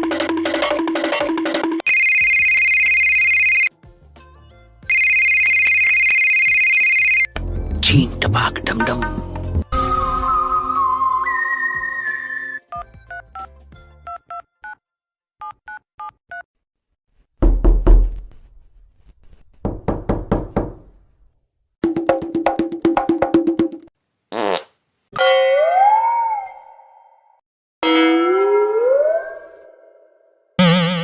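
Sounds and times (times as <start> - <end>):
short beeping tones: 1.9 - 3.7
sputtering fart sounds: 24.3 - 24.8.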